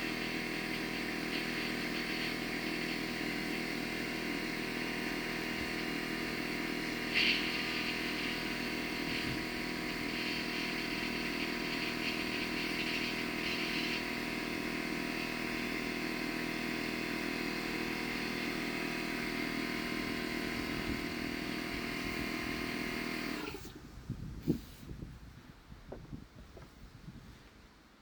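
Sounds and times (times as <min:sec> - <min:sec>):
motor humming steadily: 0:00.0 - 0:25.0.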